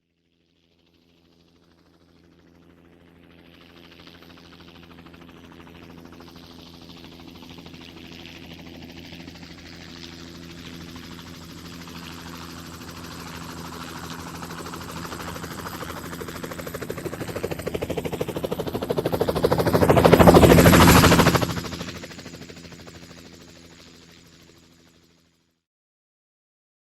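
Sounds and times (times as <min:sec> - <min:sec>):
helicopter flying past: 0:00.3 - 0:25.5.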